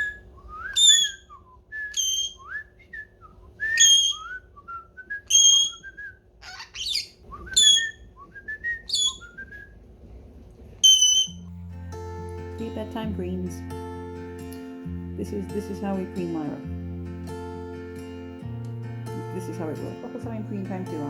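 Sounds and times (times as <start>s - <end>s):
parrot chirping: 0.0s - 1.3s, 1.9s - 2.6s, 3.6s - 4.4s, 5.2s - 8.1s, 8.8s - 9.4s, 10.8s - 11.5s
parrot whistled glides: 0.0s - 9.8s, 10.8s - 11.4s.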